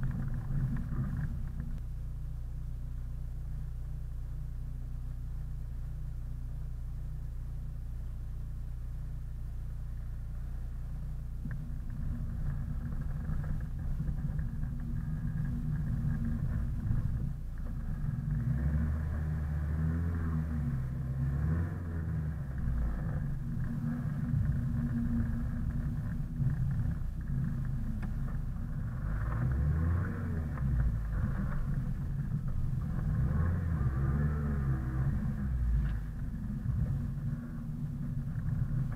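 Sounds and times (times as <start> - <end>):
car engine idling and driving off: 0.0 - 38.9.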